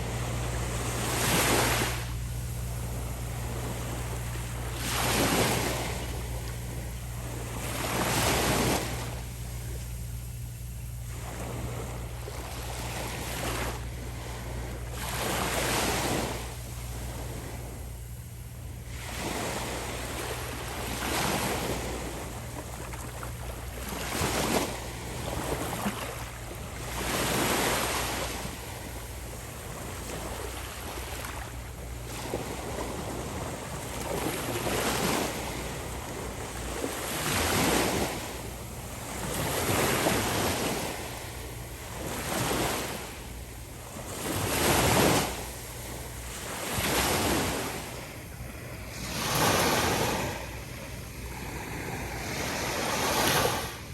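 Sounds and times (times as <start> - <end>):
small ocean waves breaking: 0.0 - 53.9.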